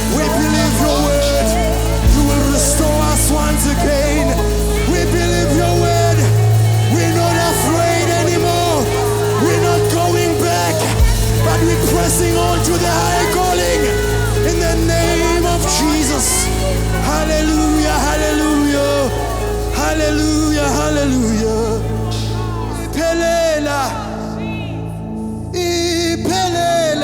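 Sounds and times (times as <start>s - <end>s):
gospel band playing: 0.0s - 27.0s.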